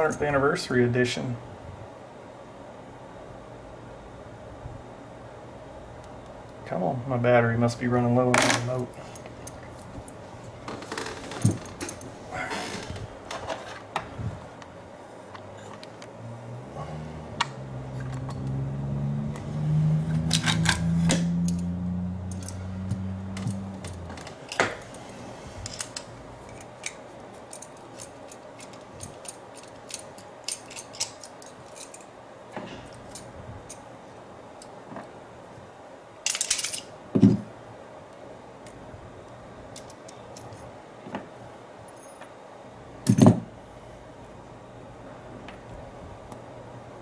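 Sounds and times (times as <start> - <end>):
keys jangling: 21.4 - 21.7, 22.3 - 24.1, 25.6 - 32.1, 36.3 - 36.9.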